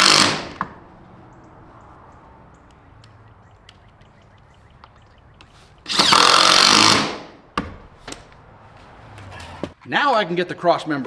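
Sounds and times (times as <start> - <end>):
power driver driving screw into wood: 0.0 - 0.8, 5.9 - 7.4.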